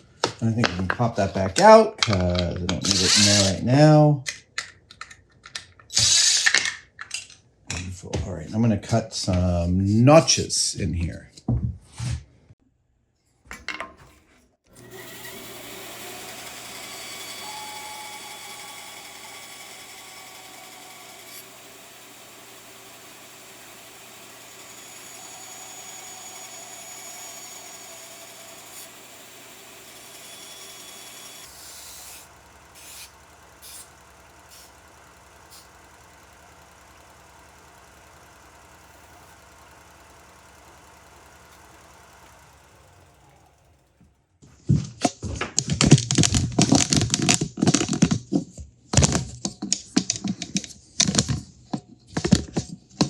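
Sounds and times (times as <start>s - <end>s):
power tool cutting: 0.6s - 4.1s, 14.7s - 44.4s.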